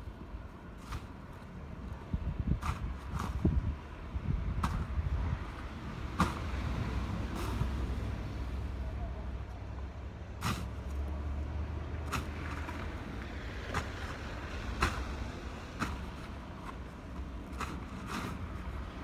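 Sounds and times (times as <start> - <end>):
snow shovel scraping ground: 10.4 - 11.0.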